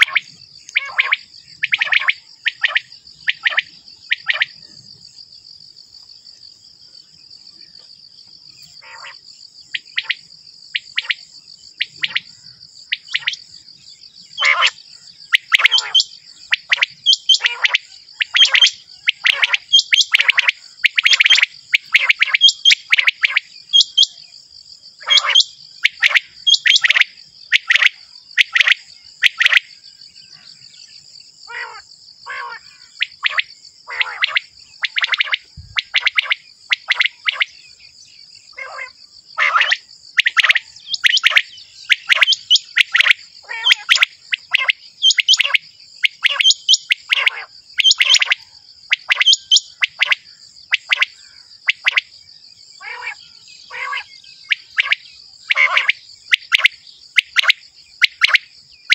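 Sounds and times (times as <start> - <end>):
quail calling: 0.0 - 4.5, 8.8 - 9.2, 14.4 - 24.2, 25.0 - 27.0, 31.5 - 37.5, 38.5 - 50.2, 52.8 - 57.5.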